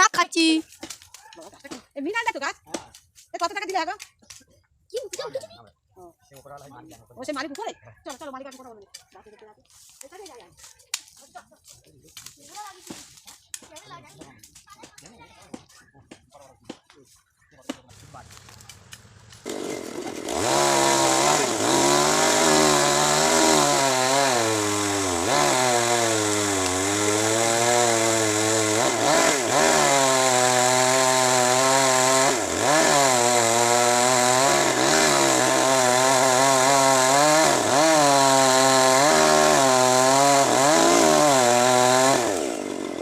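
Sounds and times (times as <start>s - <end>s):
chainsaw cutting wood: 17.7s - 43.0s.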